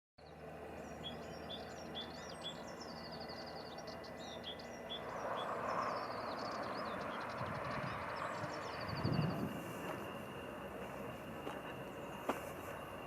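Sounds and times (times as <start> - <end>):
small birds chirping: 0.2 - 10.4.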